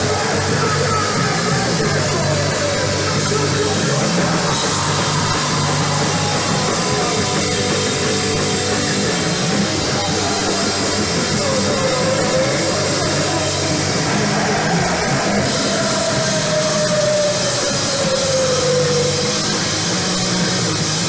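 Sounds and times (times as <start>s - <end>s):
live punk rock band: 0.0s - 21.0s.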